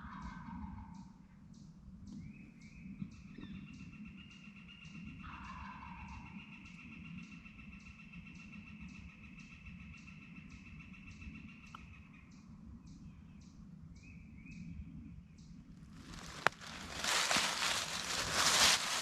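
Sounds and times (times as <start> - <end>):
rustling and crunching in dry leaves: 16.0 - 19.0.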